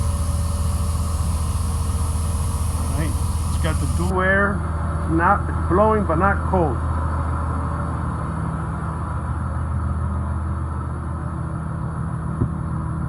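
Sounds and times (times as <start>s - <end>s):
diesel bus engine idling: 0.0s - 4.1s
blower fan rushing: 0.0s - 4.2s.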